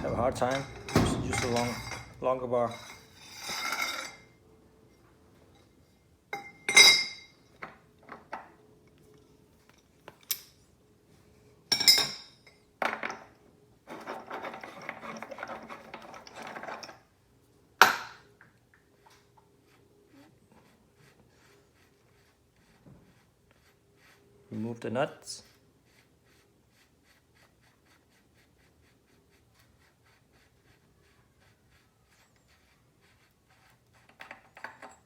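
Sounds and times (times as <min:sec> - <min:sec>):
metal tools clinking: 0:00.0 - 0:04.4, 0:05.0 - 0:08.2, 0:09.6 - 0:10.7, 0:11.7 - 0:13.3.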